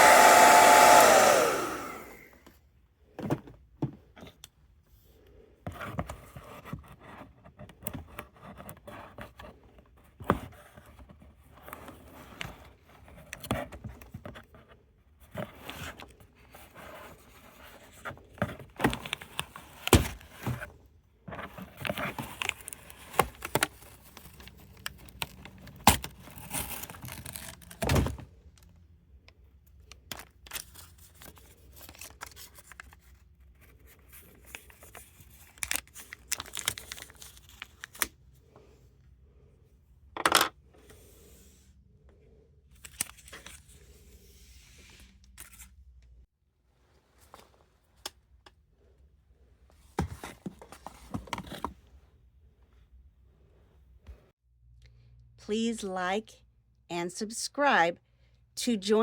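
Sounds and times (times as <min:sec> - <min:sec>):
label scraping and tearing: 0:22.0 - 0:27.9.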